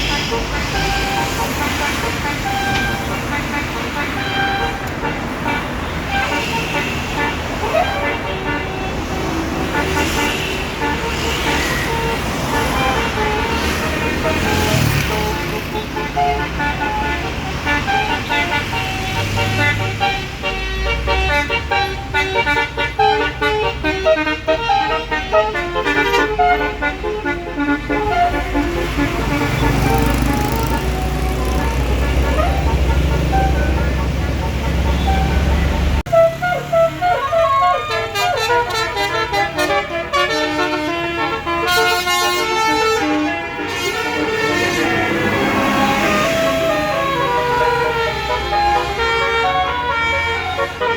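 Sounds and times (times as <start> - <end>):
bus horn tooting tune: 0.0 - 50.9
engine rumble: 7.0 - 37.7.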